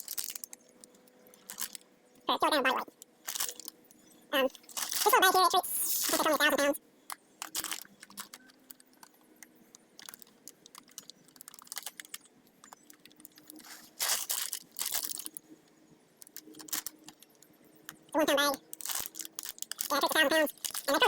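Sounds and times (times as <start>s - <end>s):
feed pellets crunching and rattling: 0.0s - 0.6s, 1.4s - 1.8s, 3.3s - 3.7s, 4.6s - 5.2s, 7.4s - 9.1s, 10.0s - 15.4s, 18.7s - 21.0s
feed bag rustling: 4.6s - 5.2s, 13.4s - 15.4s.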